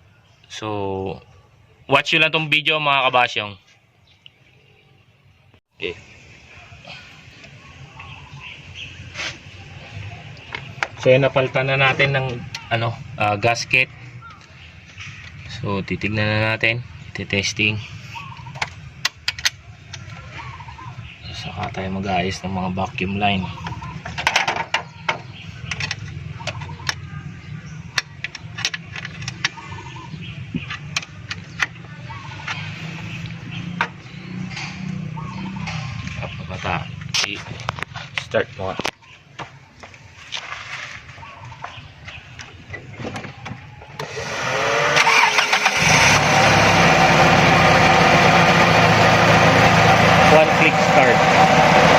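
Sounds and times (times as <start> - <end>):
engine running: 44.0 - 51.9
starter motor whirring: 44.0 - 51.9.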